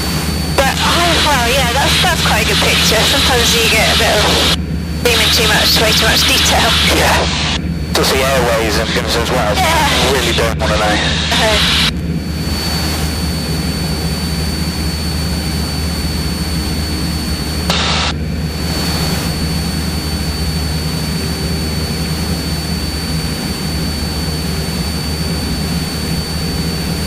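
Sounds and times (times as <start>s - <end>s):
high whine: 0.0s - 15.3s, 17.5s - 19.2s
airplane engine drone: 0.0s - 27.0s.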